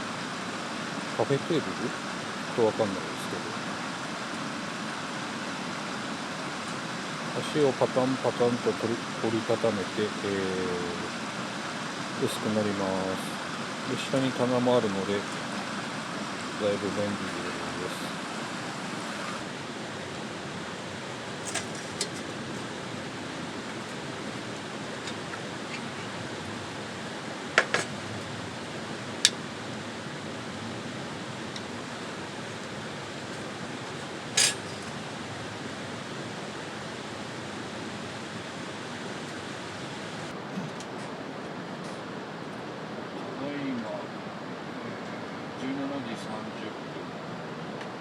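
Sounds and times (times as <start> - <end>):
steady rushing hiss: 0.0 - 48.0
camp gear clinking: 16.4 - 20.2, 21.4 - 22.7, 27.6 - 28.2, 31.5 - 35.2.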